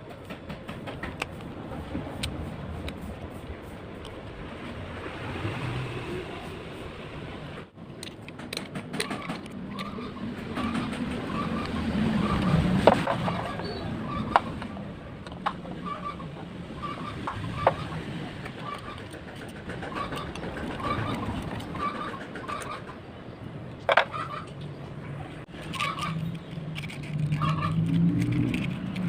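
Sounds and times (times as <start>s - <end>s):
sharp knocks and clicks: 0.0s - 1.6s, 8.0s - 13.6s, 17.2s - 23.0s
bird chirping: 13.2s - 14.7s.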